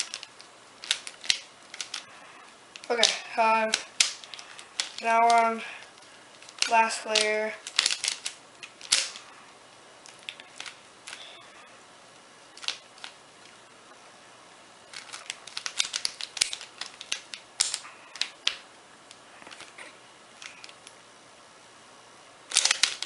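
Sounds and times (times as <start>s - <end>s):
puzzle cube clicking as turned: 0.0s - 2.0s, 2.8s - 5.4s, 6.4s - 9.2s, 10.1s - 11.2s, 12.6s - 13.2s, 14.9s - 18.6s, 22.5s - 23.0s.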